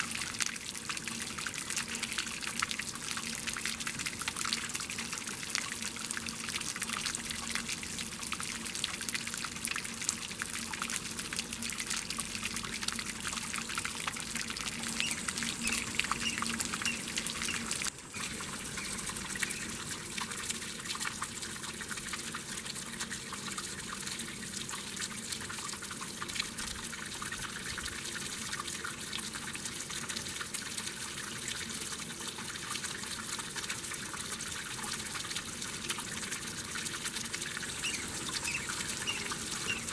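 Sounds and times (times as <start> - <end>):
water splashing and trickling: 0.0 - 39.9.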